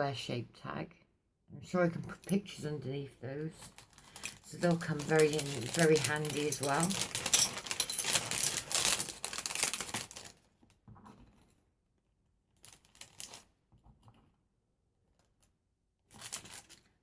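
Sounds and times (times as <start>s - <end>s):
packaging crinkling and rustling: 3.5s - 10.5s, 16.2s - 16.9s.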